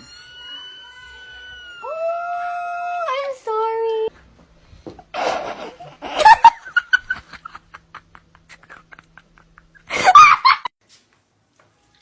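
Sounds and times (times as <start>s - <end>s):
person laughing: 5.2s - 10.7s.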